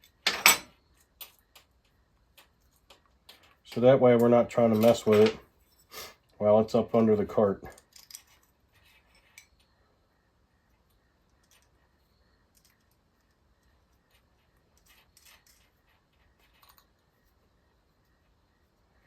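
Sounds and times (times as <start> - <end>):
small metal parts clicking: 0.0 - 5.9, 7.6 - 9.7, 11.3 - 11.8, 12.5 - 13.4, 14.7 - 15.8, 16.4 - 17.0.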